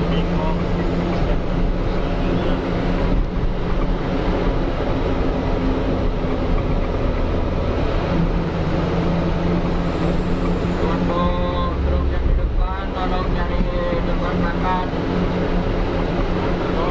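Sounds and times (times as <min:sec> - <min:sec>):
road noise: 0:00.0 - 0:16.9
truck engine droning: 0:00.0 - 0:16.9.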